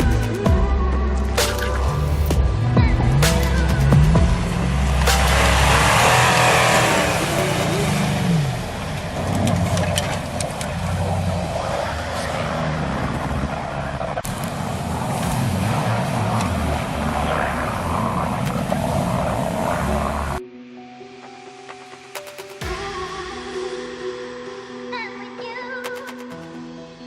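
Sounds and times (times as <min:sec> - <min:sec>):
suv engine running: 0:00.0 - 0:20.4.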